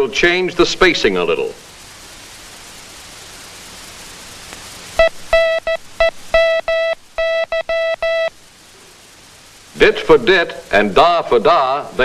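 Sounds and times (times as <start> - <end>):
morse code beeps: 5.0 - 8.3.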